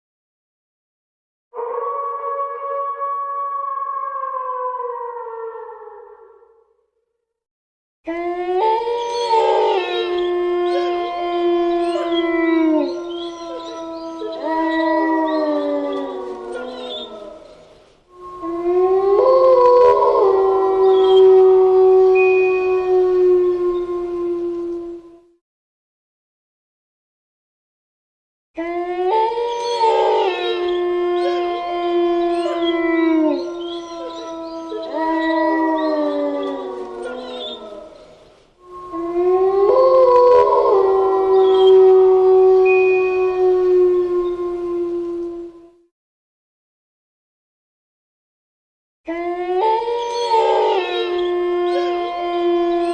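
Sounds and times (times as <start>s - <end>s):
wolves howling: 1.6s - 6.6s, 8.1s - 25.4s, 28.6s - 45.8s, 49.1s - 52.9s.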